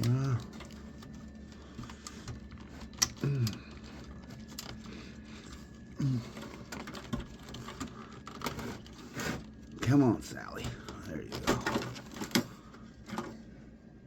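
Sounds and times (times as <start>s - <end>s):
man humming low: 0.0s - 0.8s, 3.0s - 4.3s, 5.9s - 6.8s
computer parts clicking: 0.0s - 13.3s.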